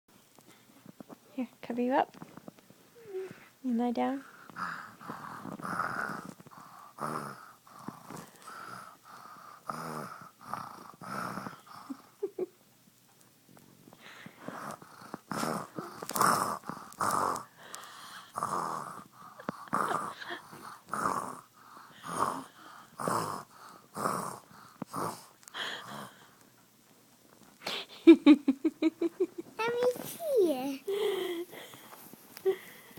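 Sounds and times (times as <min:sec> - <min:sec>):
boy fake snoring: 0:04.2 - 0:12.4, 0:14.4 - 0:26.1.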